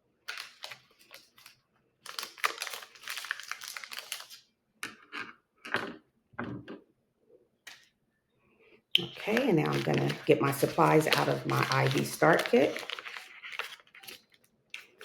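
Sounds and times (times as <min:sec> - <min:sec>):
plastic packaging crinkling: 0:00.3 - 0:04.4, 0:09.0 - 0:15.0.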